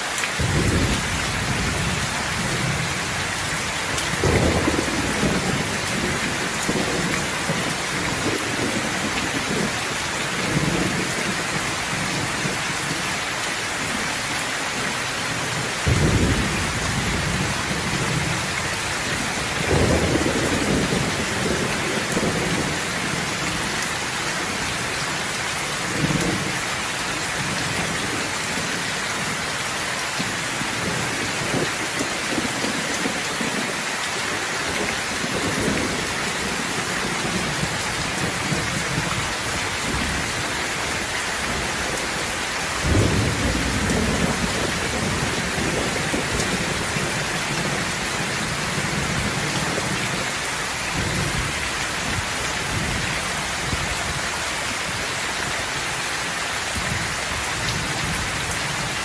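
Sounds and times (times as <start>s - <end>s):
heavy rain falling: 0.0s - 59.0s
thunder rumbling: 0.4s - 12.6s, 15.6s - 24.6s, 34.6s - 50.4s.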